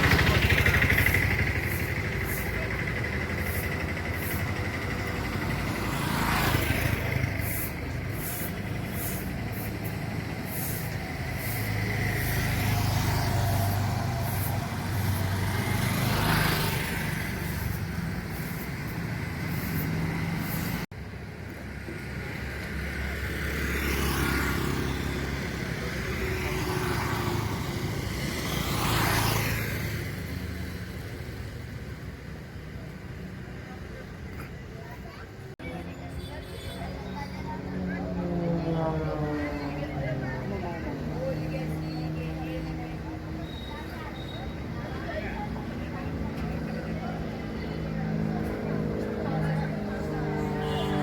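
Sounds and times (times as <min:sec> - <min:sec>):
low engine rumble: 0:00.0 - 0:23.1, 0:36.8 - 0:51.0
vehicles whooshing past: 0:00.0 - 0:51.0.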